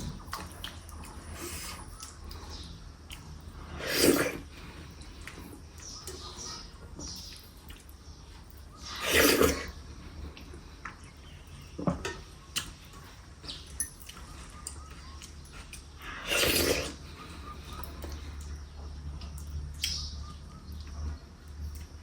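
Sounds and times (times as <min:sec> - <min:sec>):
loud slurps: 0:03.6 - 0:05.0, 0:08.8 - 0:09.8, 0:16.0 - 0:17.4.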